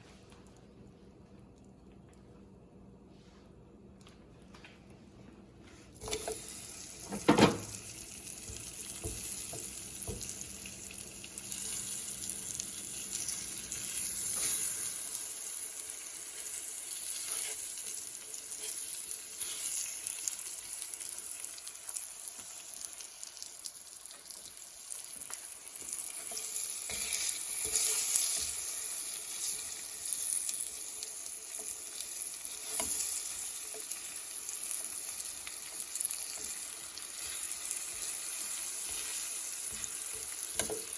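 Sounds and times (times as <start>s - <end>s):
plantain slices sizzling in butter: 6.0s - 40.9s.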